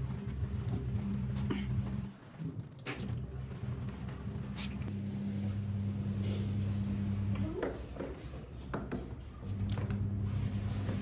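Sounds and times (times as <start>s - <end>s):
low electrical hum: 0.0s - 7.6s.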